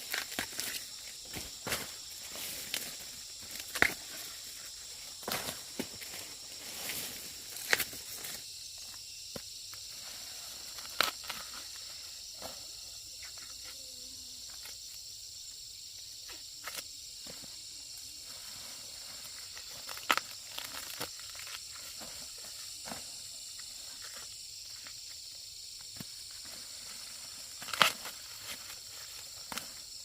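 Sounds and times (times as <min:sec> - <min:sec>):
insects droning: 0:00.0 - 0:30.0.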